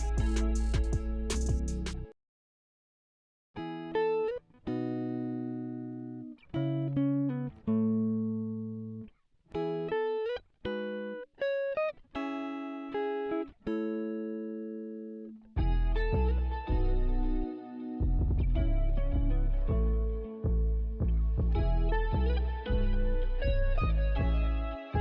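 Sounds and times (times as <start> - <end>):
guitar chords ringing: 0.0 - 2.1, 3.6 - 25.0.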